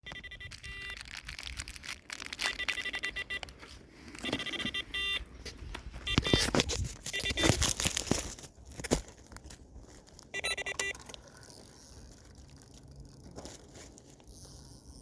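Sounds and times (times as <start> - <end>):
bite alarm beeping: 0.0 - 1.0, 2.4 - 3.5, 4.2 - 5.3, 7.1 - 7.6, 10.3 - 11.0.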